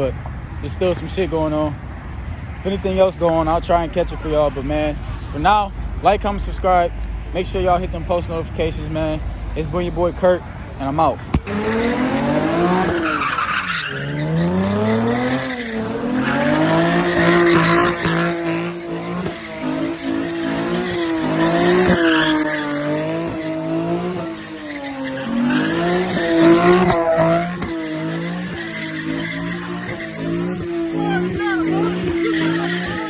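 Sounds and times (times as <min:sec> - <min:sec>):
car engine revving: 0:03.3 - 0:33.0
tyres squealing: 0:24.3 - 0:33.0.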